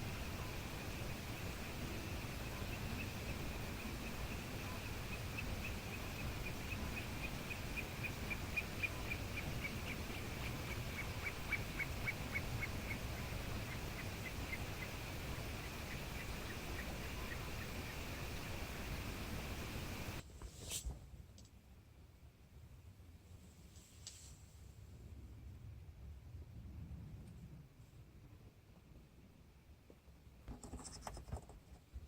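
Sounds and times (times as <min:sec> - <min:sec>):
low background rumble: 0:00.0 - 0:20.2.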